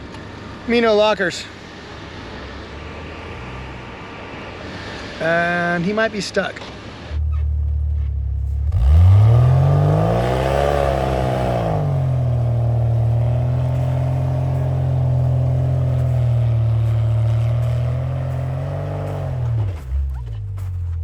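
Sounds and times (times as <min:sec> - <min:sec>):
engine revving hard: 0:08.7 - 0:19.9.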